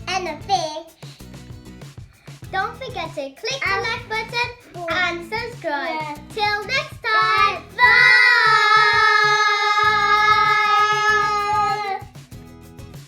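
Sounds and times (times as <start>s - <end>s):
background music: 0.0s - 13.0s
child singing: 3.6s - 12.1s.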